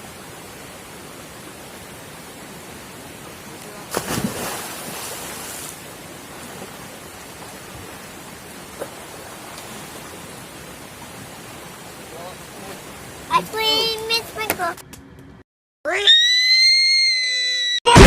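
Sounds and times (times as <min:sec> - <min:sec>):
loud splash into water: 0:03.9 - 0:05.8.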